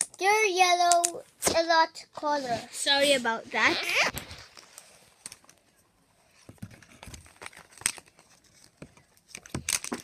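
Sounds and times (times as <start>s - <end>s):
packaging tearing and crinkling: 7.0s - 10.0s.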